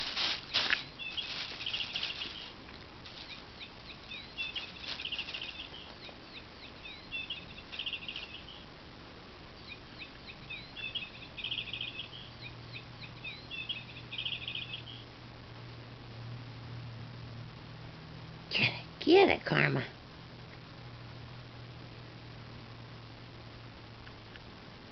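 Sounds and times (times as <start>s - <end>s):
bag crinkling: 0.0s - 5.9s
electronic bird chirps: 0.8s - 2.5s, 3.2s - 8.7s, 9.6s - 15.0s.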